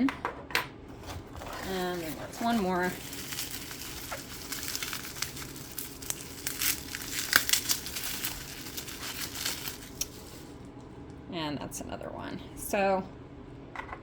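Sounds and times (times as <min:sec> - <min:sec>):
bubble wrap crackling: 0:01.2 - 0:10.7.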